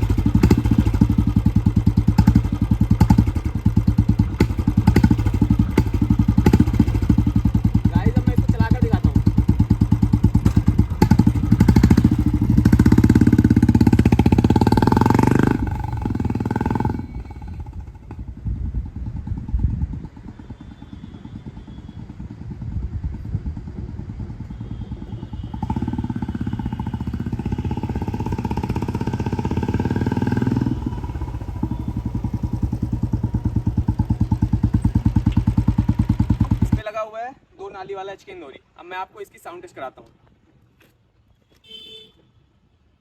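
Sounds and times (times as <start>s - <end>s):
motorcycle engine thumping: 0.0s - 18.7s, 25.3s - 36.8s.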